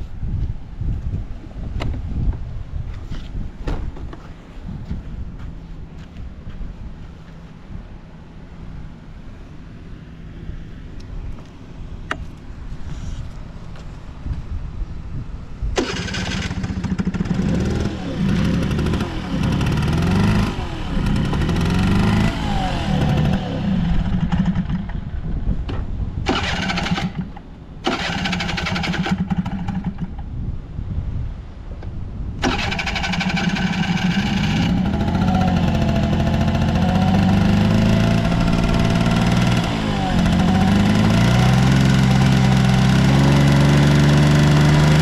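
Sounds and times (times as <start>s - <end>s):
moped engine idling and revving: 15.7s - 30.3s, 32.4s - 45.0s.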